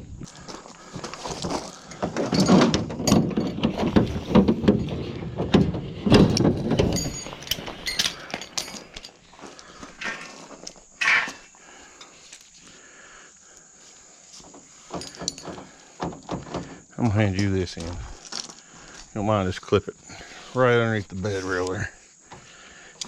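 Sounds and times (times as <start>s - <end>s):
scrap metal clanking and rattling: 1.2s - 12.2s, 14.4s - 18.2s.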